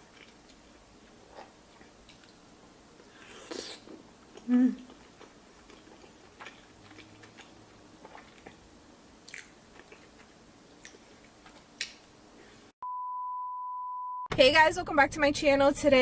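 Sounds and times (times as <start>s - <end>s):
chewing and mouth sounds: 0.0s - 2.4s, 3.0s - 12.1s
steady single-pitch beep: 12.8s - 14.3s.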